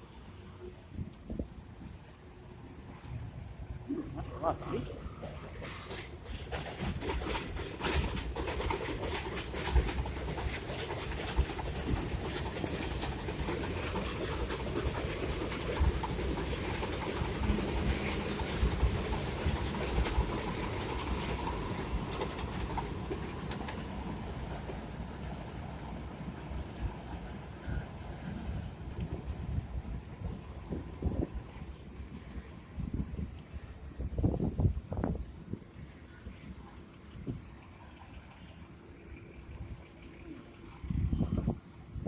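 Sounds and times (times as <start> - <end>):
subway train rumbling: 0.0 - 42.0
wheels clicking over rail joints: 5.1 - 25.3.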